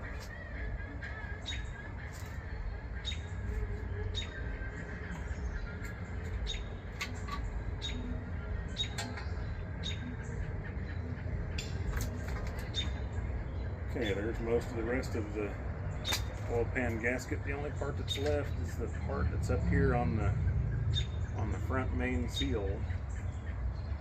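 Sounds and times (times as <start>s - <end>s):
sharp clicks and squeaks: 5.0s - 10.8s, 11.5s - 13.1s, 15.9s - 17.4s, 18.0s - 19.0s.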